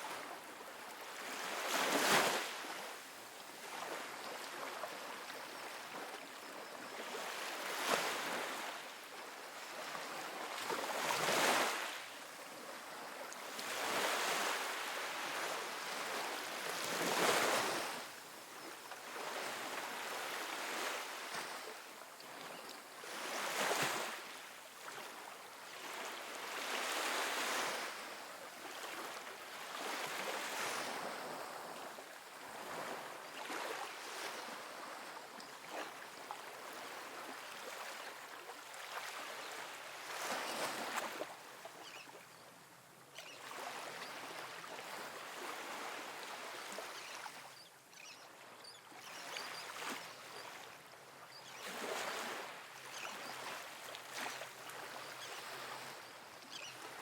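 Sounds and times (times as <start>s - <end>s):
waves breaking on beach: 0.0s - 42.0s, 43.2s - 57.0s.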